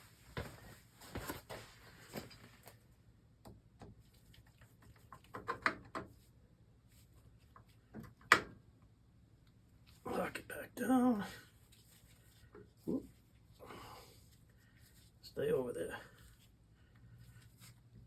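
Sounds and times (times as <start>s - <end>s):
tools clicking and knocking: 5.1s - 6.1s.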